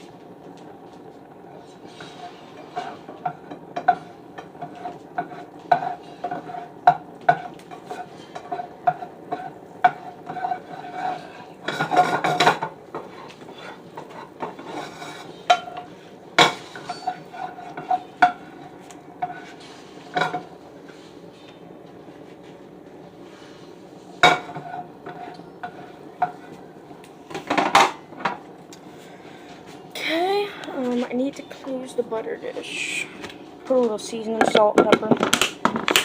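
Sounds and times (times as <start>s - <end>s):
utensil scraping pan: 1.6s - 20.5s, 23.3s - 26.6s.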